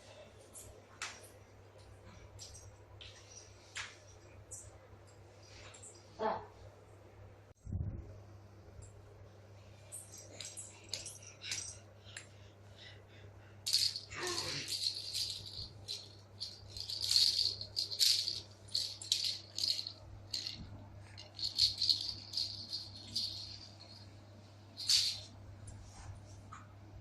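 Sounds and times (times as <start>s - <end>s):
rattle shaken: 9.9s - 11.8s, 13.6s - 24.2s, 24.8s - 25.4s.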